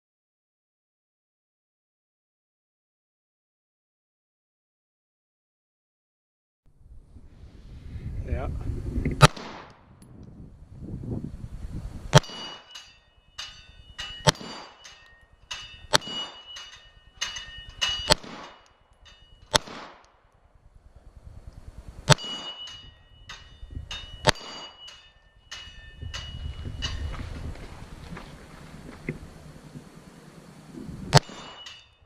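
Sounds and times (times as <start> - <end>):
gunshots: 9.2 - 9.8, 14.2 - 14.9, 18.0 - 18.6, 19.5 - 20.0, 22.1 - 22.7, 31.1 - 31.7
metallic target clanging: 12.2 - 19.7, 22.1 - 27.7, 31.1 - 32.0.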